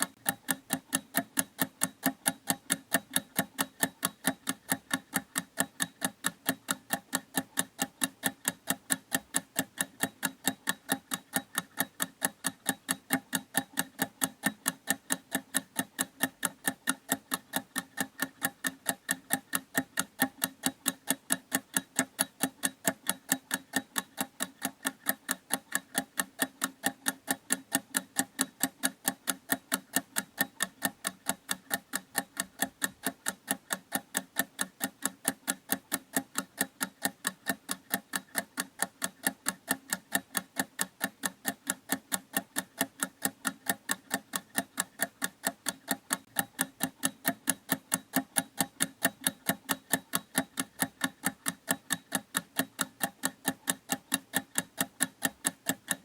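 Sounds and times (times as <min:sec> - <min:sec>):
clock ticking: 0:00.0 - 0:56.0.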